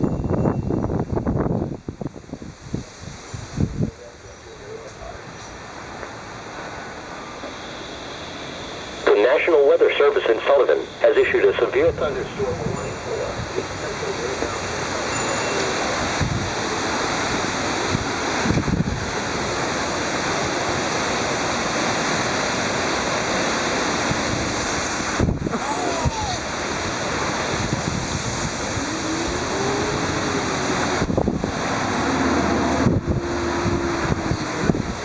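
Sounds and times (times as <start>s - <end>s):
wind buffeting microphone: 0.0s - 4.3s, 11.9s - 22.2s, 23.3s - 35.0s
heavy rain pouring: 0.0s - 35.0s.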